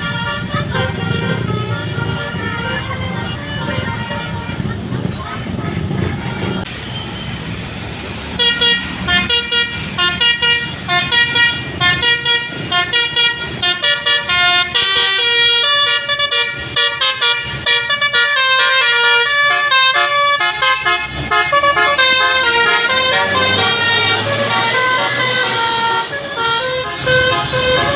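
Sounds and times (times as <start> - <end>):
bus engine rumble: 0.0 - 6.7
bus musical air horn: 0.0 - 6.7, 8.4 - 27.9
traffic rumble: 0.0 - 6.8.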